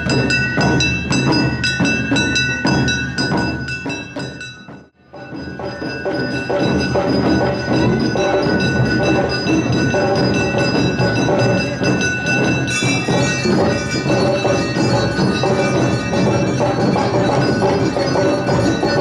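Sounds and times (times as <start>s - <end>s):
drums beating steady rhythm: 0.0s - 19.0s
metallic ringing hand gongs: 0.0s - 19.0s.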